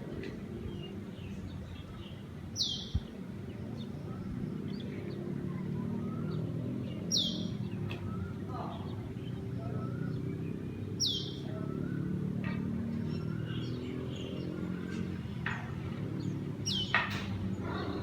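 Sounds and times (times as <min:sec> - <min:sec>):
birds chirping: 0:00.0 - 0:18.0.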